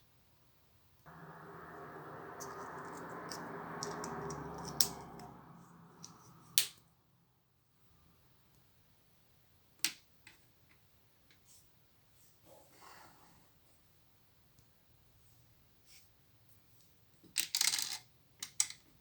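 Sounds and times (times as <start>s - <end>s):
steady background noise: 1.1s - 7.0s
plastic bricks clicking together: 17.4s - 18.8s.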